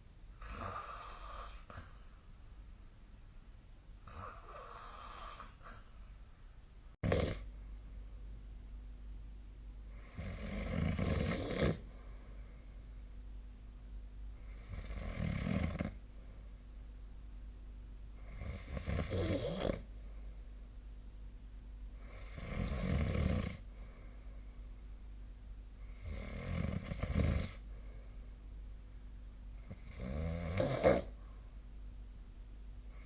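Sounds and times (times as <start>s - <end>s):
person snoring: 0.4s - 1.9s, 4.0s - 5.8s, 7.0s - 7.5s, 10.0s - 11.9s, 14.5s - 16.0s, 18.2s - 19.9s, 22.0s - 23.6s, 25.9s - 27.6s, 29.7s - 31.2s.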